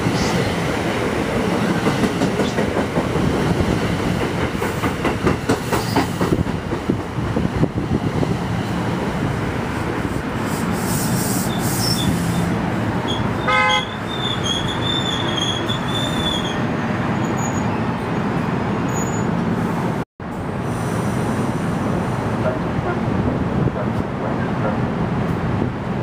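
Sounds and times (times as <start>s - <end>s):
train passing with rail noise: 0.0s - 26.0s
high wheel squeal: 10.8s - 17.8s, 18.9s - 19.4s
train horn toot: 13.4s - 14.0s.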